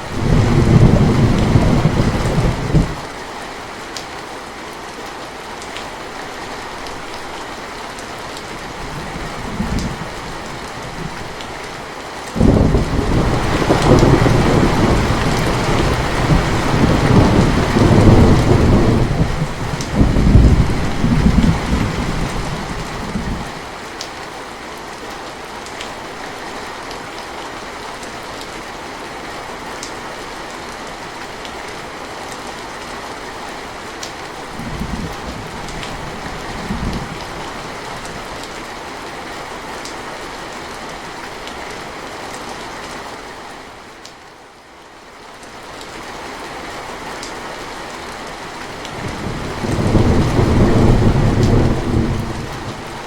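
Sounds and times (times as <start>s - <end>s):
thunder rumbling: 0.0s - 3.0s, 12.4s - 23.6s, 49.0s - 53.0s
heavy rain: 0.0s - 53.0s.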